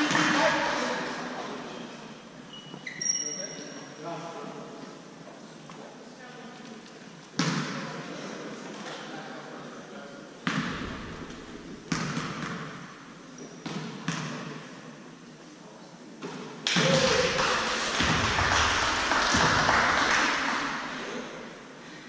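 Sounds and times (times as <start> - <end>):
voices in a gym: 0.0 - 22.0.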